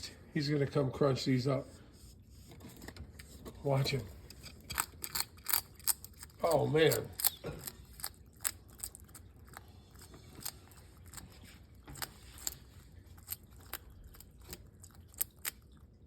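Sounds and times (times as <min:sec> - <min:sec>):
lizard crunching beetles: 0:03.8 - 0:16.0.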